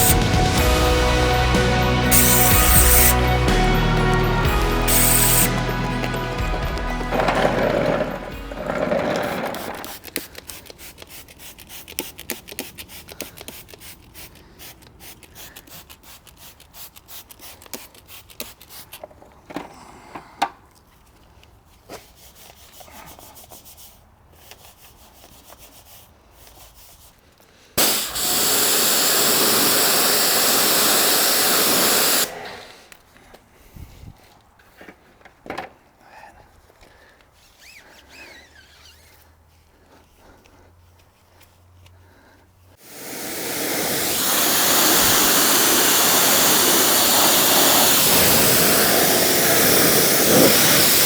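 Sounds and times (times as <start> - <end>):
loud steady hiss: 0.0 - 8.4, 27.8 - 32.7, 42.8 - 51.0.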